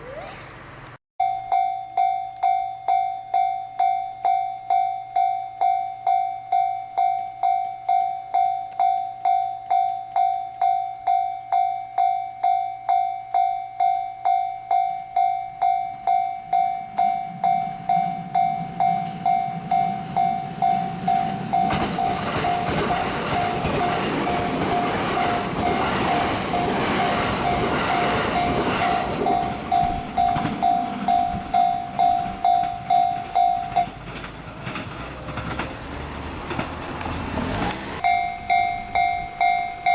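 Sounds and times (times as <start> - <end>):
level crossing warning bell: 1.2 - 34.1, 38.0 - 39.9
train passing: 15.2 - 39.9.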